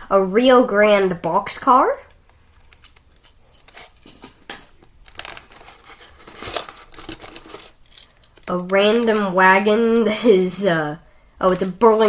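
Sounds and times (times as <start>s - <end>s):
light crinkling: 2.1s - 9.4s
small clicks of handled items: 6.6s - 9.3s.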